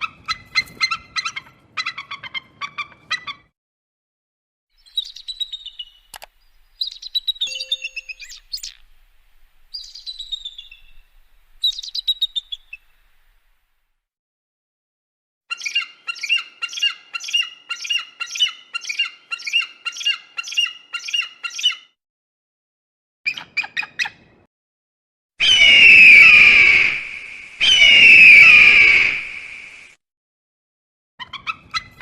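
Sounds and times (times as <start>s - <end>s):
bird of prey calling: 4.8s - 13.4s, 15.5s - 22.0s, 25.4s - 29.8s
bird of prey screaming: 25.4s - 29.8s.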